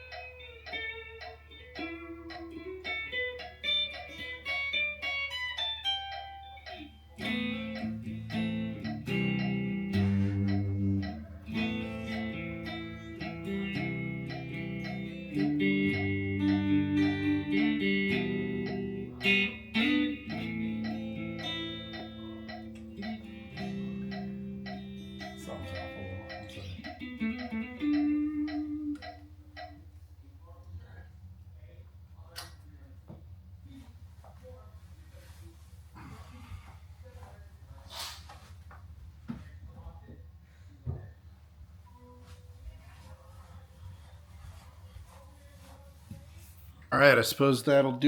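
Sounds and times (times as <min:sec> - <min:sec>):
guitar playing: 0:00.0 - 0:29.9.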